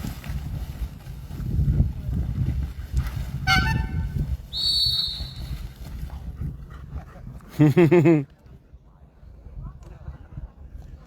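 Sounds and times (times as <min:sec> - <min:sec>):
wind rumble on microphone: 0:00.0 - 0:11.0
whistle blast: 0:04.5 - 0:05.6.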